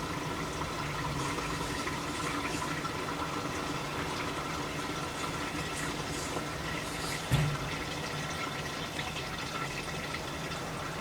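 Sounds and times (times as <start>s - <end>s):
water pouring into washing machine: 0.0s - 11.0s.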